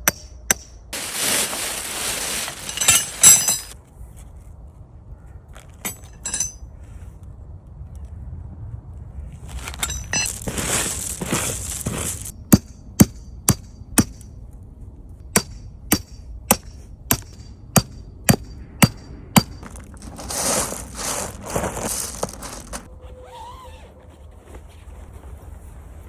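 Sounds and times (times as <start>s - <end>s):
rustling and scraping: 1.0s - 4.9s, 9.0s - 12.4s, 19.4s - 26.0s
sharp ringing knocks: 12.4s - 14.4s, 15.3s - 19.8s.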